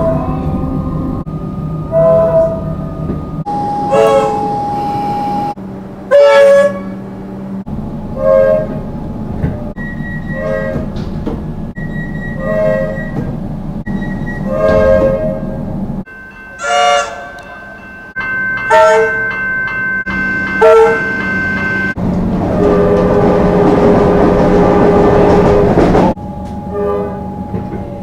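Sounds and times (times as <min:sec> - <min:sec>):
train hum: 0:00.0 - 0:28.0
electric train horn blasts: 0:01.9 - 0:02.8, 0:03.4 - 0:07.2, 0:08.1 - 0:08.8, 0:10.3 - 0:10.9, 0:12.4 - 0:13.2, 0:14.4 - 0:17.6, 0:18.7 - 0:19.3, 0:20.0 - 0:23.7, 0:24.7 - 0:27.6.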